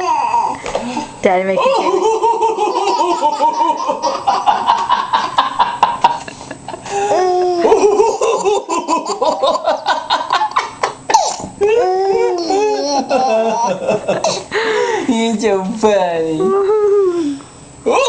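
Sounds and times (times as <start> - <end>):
baby laughing: 1.6 - 4.8, 10.3 - 13.9.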